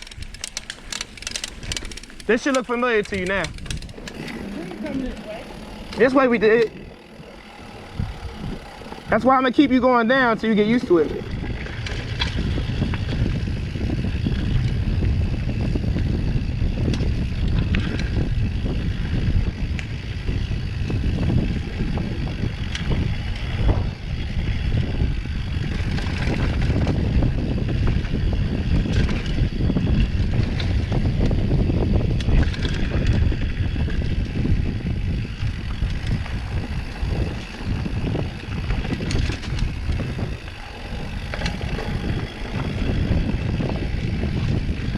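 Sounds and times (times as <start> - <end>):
bike tyres rolling on dirt: 0.0 - 44.9
wind on microphone: 0.0 - 44.9.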